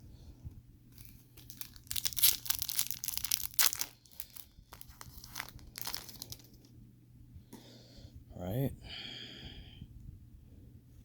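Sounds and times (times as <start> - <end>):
wrapper tearing and crinkling: 1.0 - 6.6.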